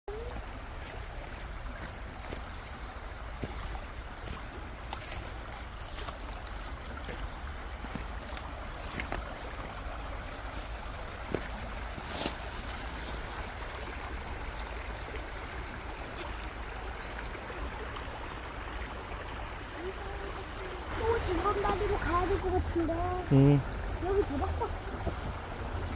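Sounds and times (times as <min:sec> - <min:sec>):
stream rushing: 0:00.1 - 0:25.9
wind rumble on microphone: 0:20.9 - 0:25.9.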